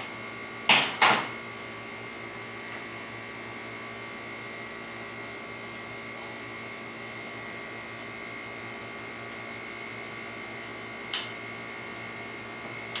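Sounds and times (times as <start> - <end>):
mechanical hum with high whine: 0.0 - 13.0
sharp click: 11.1 - 11.3.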